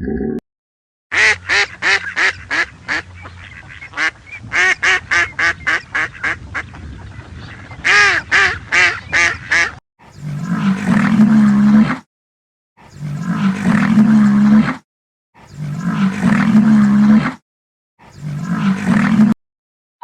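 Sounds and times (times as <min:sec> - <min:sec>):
geese honking: 0:01.1 - 0:09.8
low drawn-out animal call: 0:10.1 - 0:12.0, 0:12.8 - 0:14.8, 0:15.4 - 0:17.4, 0:18.0 - 0:19.4.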